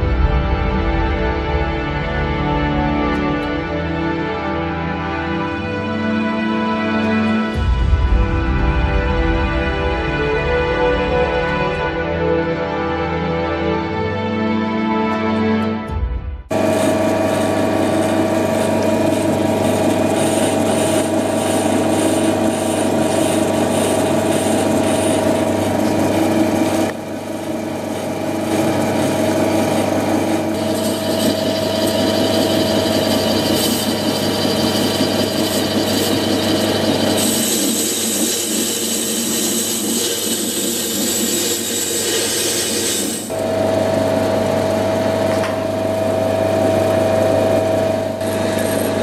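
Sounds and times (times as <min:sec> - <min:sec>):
power tool cutting metal: 0:16.5 - 0:49.0.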